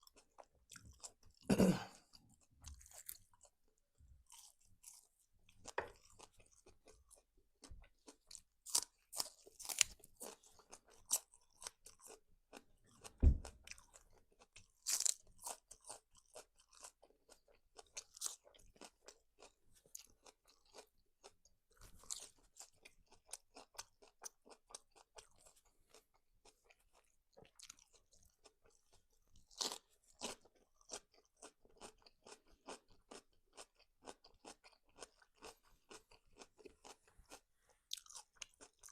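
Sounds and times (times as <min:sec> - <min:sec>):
crunchy bites: 0:08.3 - 0:12.6
dull thump: 0:13.2 - 0:13.5.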